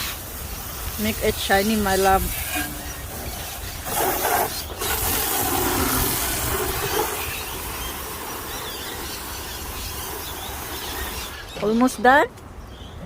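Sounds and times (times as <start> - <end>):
wind rushing on microphone: 0.9 - 11.3.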